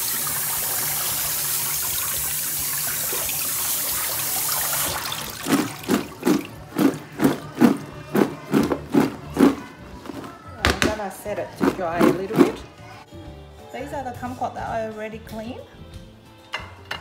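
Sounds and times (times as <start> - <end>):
kitchen tap running: 0.0 - 9.6.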